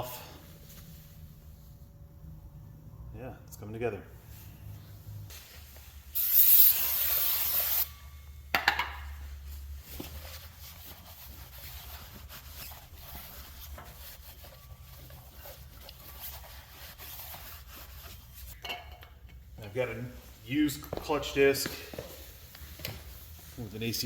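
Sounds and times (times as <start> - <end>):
aerosol spray hissing: 6.2 - 7.9
faint rubbing: 20.2 - 24.0.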